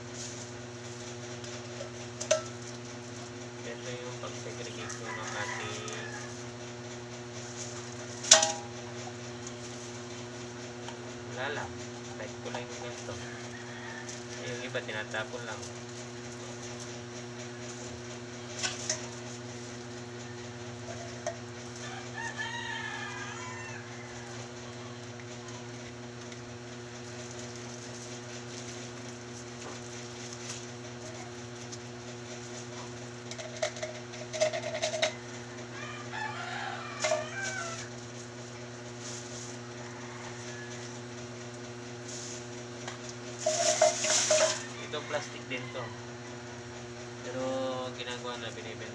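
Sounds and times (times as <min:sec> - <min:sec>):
steady low hum: 0:00.0 - 0:48.9
rooster crowing: 0:04.7 - 0:06.6, 0:12.6 - 0:14.8, 0:20.2 - 0:25.1, 0:34.6 - 0:38.0, 0:39.4 - 0:41.3, 0:43.6 - 0:46.8
rustling clatter: 0:42.0 - 0:44.8.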